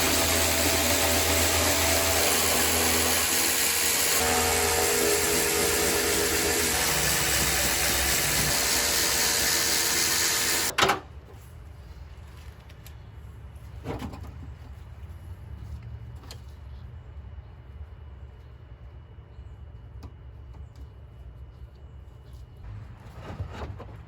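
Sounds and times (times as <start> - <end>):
power tool motor running: 0.0 - 10.7.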